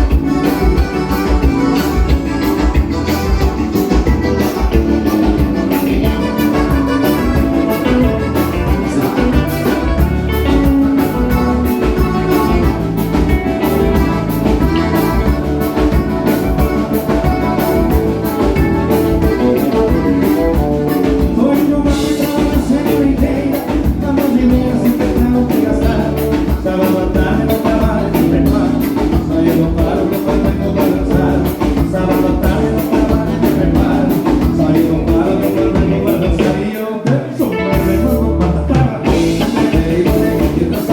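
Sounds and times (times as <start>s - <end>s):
live band playing dance music: 0.0s - 40.9s
person singing: 0.0s - 40.9s.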